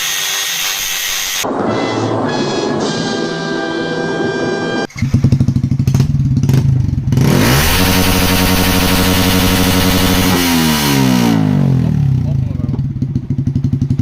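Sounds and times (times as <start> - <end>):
background music: 1.5 - 4.9
motorcycle engine idling and revving: 4.9 - 14.0.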